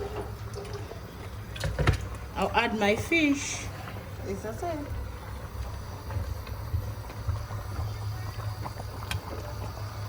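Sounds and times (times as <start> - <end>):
soup boiling rumble: 0.0 - 10.0
bubbling ticks: 5.4 - 10.0.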